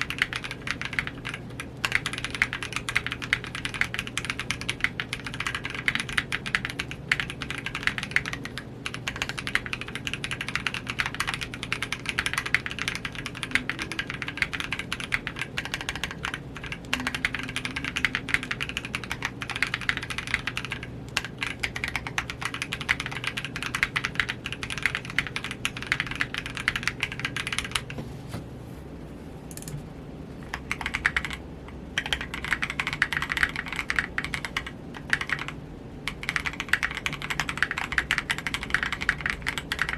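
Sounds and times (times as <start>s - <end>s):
fast mechanical keyboard typing: 0.0s - 28.0s, 30.4s - 39.9s.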